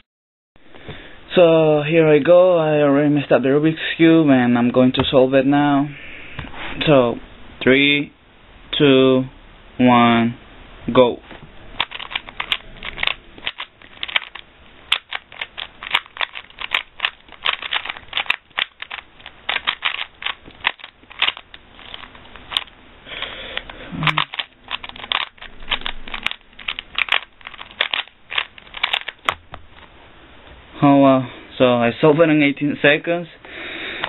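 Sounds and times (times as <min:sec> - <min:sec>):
puzzle cube clicking and clacking: 0:11.8 - 0:29.7.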